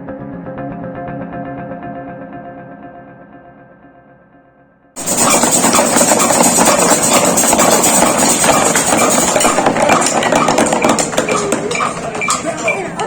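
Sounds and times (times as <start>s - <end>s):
fast drumming: 5.0s - 13.0s.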